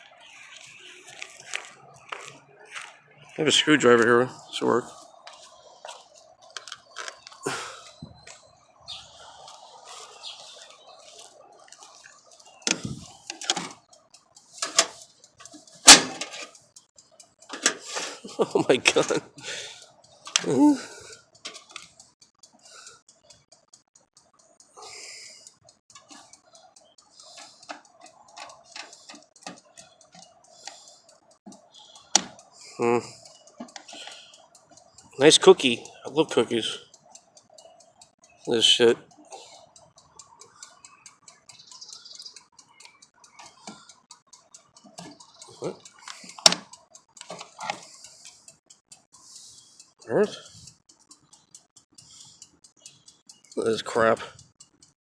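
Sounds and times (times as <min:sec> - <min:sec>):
screwdriver clicking and scraping plastic: 0:06.5 - 0:07.4, 0:12.7 - 0:13.8, 0:14.6 - 0:16.6, 0:21.4 - 0:22.0, 0:46.2 - 0:47.9
hard objects clicking on metal tray: 0:09.9 - 0:13.9, 0:14.5 - 0:23.9, 0:24.9 - 0:55.0.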